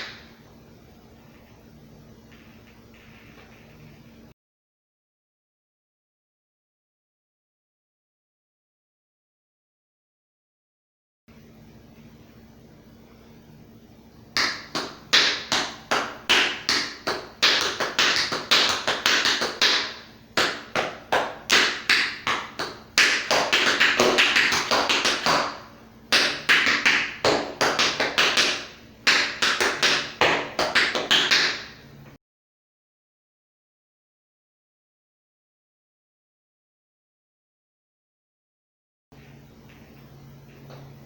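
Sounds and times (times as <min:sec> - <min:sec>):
tap shoes on hard floor: 0:14.4 - 0:31.7.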